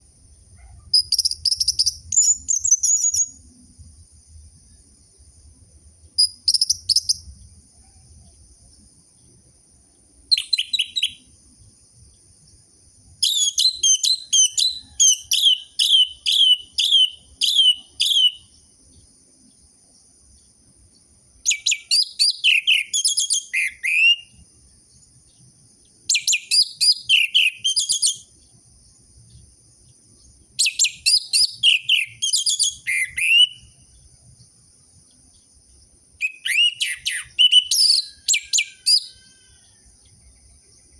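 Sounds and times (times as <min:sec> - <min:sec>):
bird singing high chirps: 0:00.9 - 0:03.5, 0:06.2 - 0:07.5, 0:10.3 - 0:11.4, 0:13.1 - 0:18.6, 0:21.4 - 0:24.4, 0:26.1 - 0:28.3, 0:30.2 - 0:33.8, 0:36.2 - 0:39.6.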